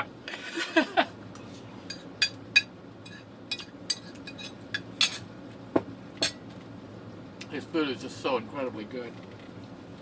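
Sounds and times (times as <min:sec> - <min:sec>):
cutlery clinking against dish: 0:01.9 - 0:05.3.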